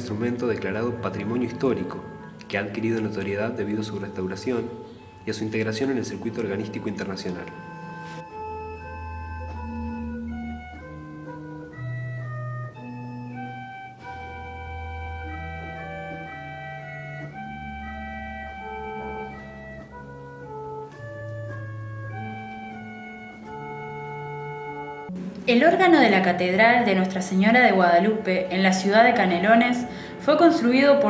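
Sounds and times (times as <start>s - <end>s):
pipe organ playing slow piece: 0.0s - 25.5s.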